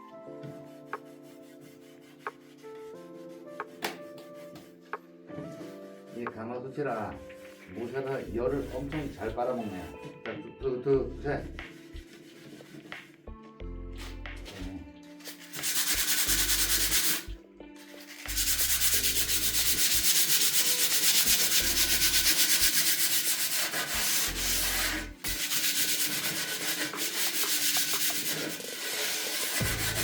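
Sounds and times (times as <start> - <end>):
scrubbing pot lid: 18.3 - 30.0.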